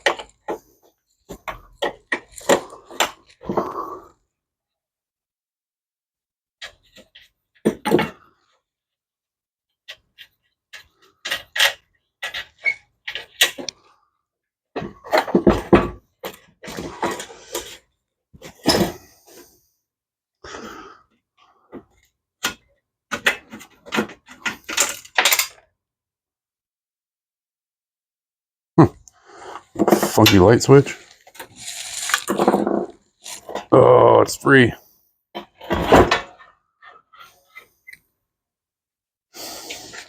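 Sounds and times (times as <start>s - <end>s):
metal clinking and scraping: 29.8s - 33.6s.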